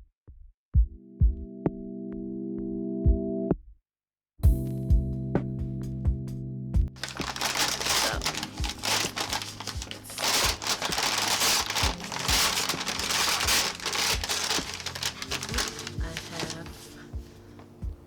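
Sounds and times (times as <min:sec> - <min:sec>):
quiet background music: 0:04.4 - 0:18.0
packaging crinkling: 0:07.0 - 0:17.4.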